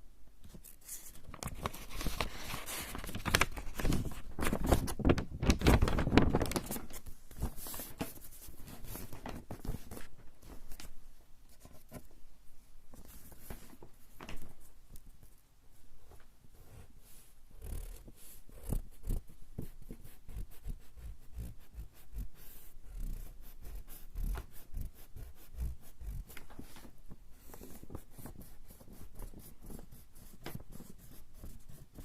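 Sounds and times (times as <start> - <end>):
eraser rubbing on paper: 17.1 - 26.4.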